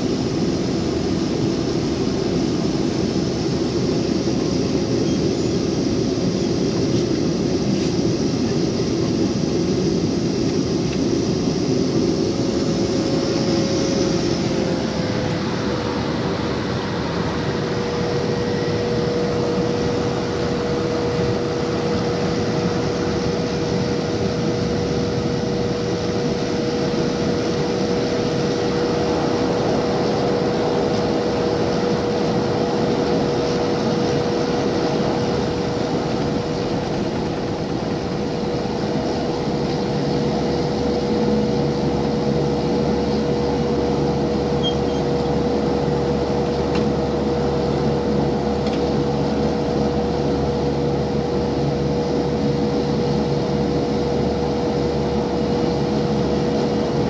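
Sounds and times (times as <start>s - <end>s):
constant humming tone: 0.0s - 57.0s
ferry engines droning: 0.0s - 57.0s
deeper hum: 10.6s - 57.0s.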